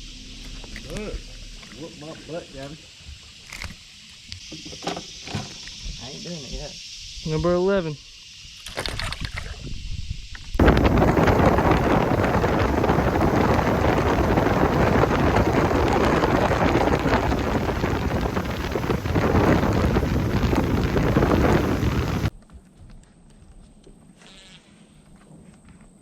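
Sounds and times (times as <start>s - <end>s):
wind buffeting microphone: 9.5s - 22.3s.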